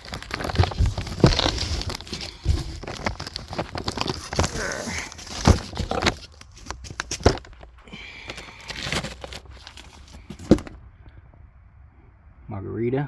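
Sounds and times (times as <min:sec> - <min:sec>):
cardboard box rustling and crinkling: 0:00.0 - 0:10.8.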